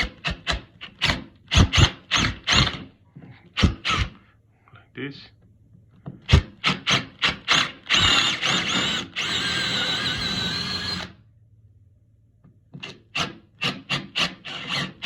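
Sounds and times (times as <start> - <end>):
power drill boring into wood: 0.0 - 2.8, 3.6 - 4.2, 6.3 - 11.2, 13.1 - 15.0.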